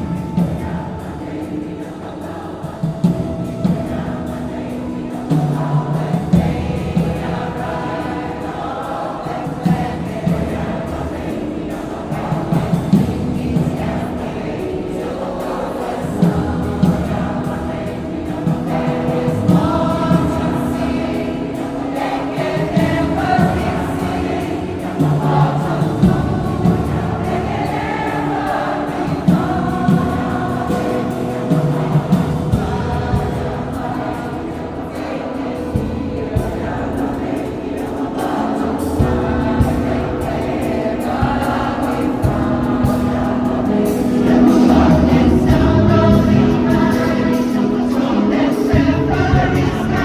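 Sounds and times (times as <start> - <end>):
choir singing in harmony: 0.0 - 50.0
instrumental accompaniment: 0.0 - 50.0
low beats: 38.2 - 50.0.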